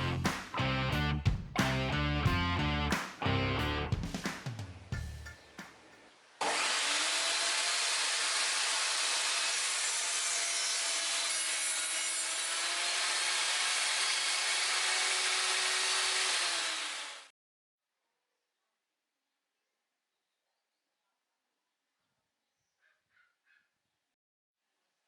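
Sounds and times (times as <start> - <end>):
spinning saw blade whine: 6.4 - 17.3
table saw cutting wood: 6.4 - 17.3.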